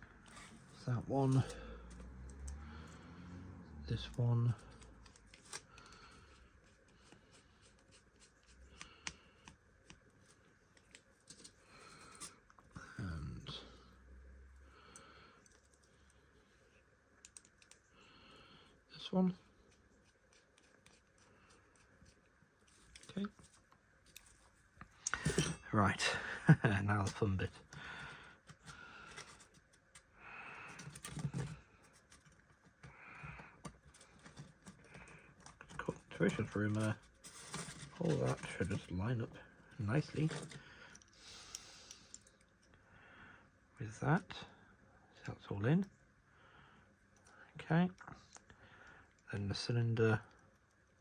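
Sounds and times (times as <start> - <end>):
small parts clicking and scraping: 40.0 - 42.8.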